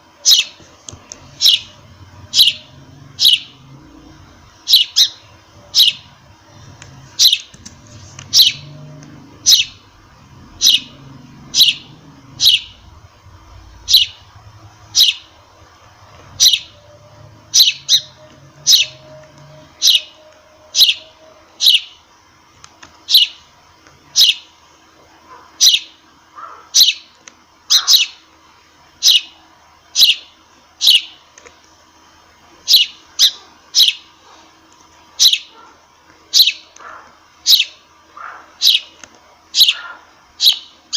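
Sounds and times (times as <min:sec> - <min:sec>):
sparrow chirping: 0:00.2 - 0:00.6, 0:01.2 - 0:22.0, 0:23.0 - 0:23.5, 0:24.1 - 0:24.5, 0:25.6 - 0:26.0, 0:26.8 - 0:27.1, 0:27.7 - 0:28.2, 0:29.0 - 0:29.4, 0:30.0 - 0:31.2, 0:32.7 - 0:34.0, 0:35.2 - 0:35.5, 0:36.3 - 0:36.7, 0:37.5 - 0:37.8, 0:38.6 - 0:38.9, 0:39.6 - 0:40.8.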